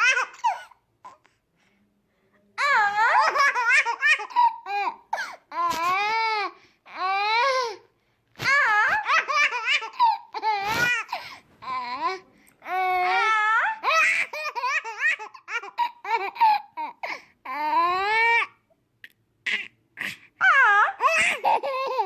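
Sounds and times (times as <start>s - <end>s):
baby laughing: 0.0s - 1.2s, 2.8s - 6.3s, 8.4s - 11.8s, 13.1s - 17.1s, 19.5s - 22.0s.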